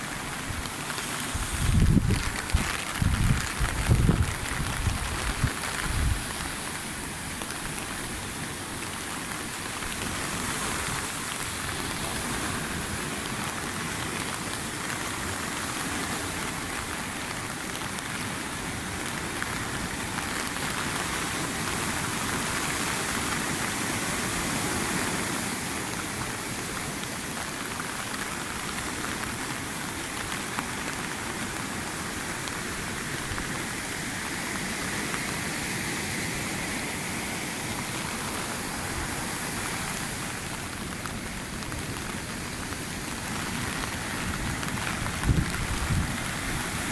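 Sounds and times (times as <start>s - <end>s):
strong wind: 0.0s - 7.3s, 31.5s - 46.9s
heavy rain hissing: 0.0s - 46.9s.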